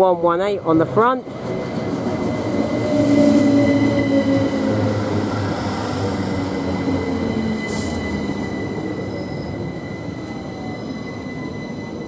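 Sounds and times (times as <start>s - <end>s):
train running noise: 0.0s - 12.0s
train brake squeal: 2.6s - 12.0s.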